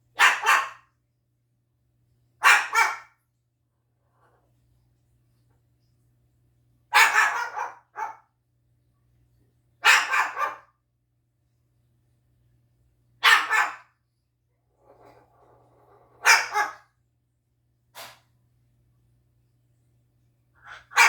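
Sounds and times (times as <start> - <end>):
cockatoo mimicking dog bark: 2.4 - 3.1, 6.9 - 8.2, 9.8 - 10.7, 13.2 - 13.9, 16.2 - 16.8, 20.6 - 21.0.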